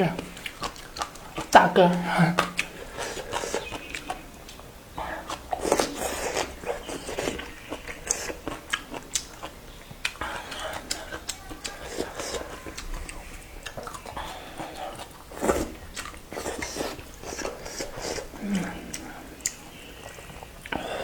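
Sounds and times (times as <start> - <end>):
person chewing noodles: 0.2 - 1.6, 2.4 - 21.0
wet mouth clicks and smacks: 2.4 - 4.6, 5.3 - 11.4.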